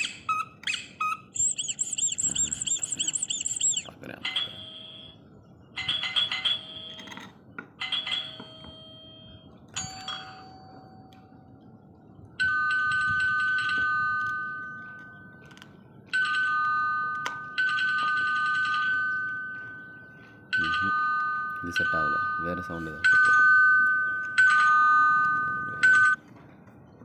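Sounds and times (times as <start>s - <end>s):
short squeaky tones: 0.0s - 3.9s.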